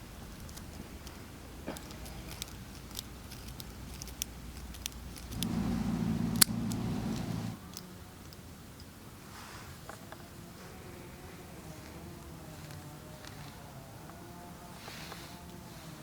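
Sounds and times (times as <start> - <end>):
small objects clicking and tapping: 0.3 - 5.6
low steady hum: 5.4 - 7.6.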